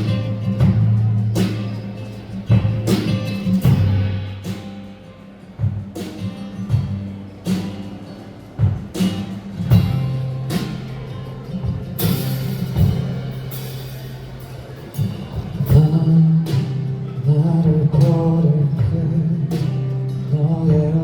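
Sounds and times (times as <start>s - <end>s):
drum strokes: 0.0s - 21.0s
live band playing pop ballad: 0.0s - 21.0s
sustained bass notes: 9.6s - 21.0s.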